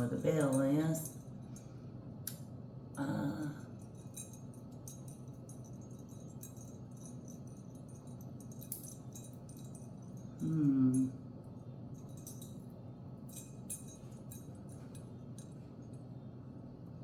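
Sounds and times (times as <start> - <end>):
metal charm jingling: 0.0 - 1.8, 3.6 - 16.2
person humming: 10.4 - 11.2.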